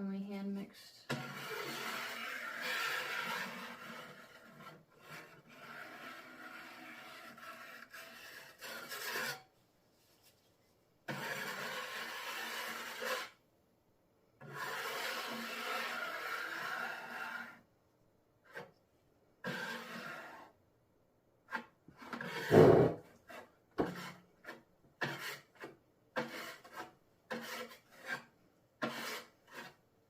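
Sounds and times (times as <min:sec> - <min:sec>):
tool scraping through cement slurry: 0:01.1 - 0:09.5, 0:11.1 - 0:13.4, 0:14.4 - 0:17.6, 0:19.4 - 0:20.6, 0:21.5 - 0:29.8.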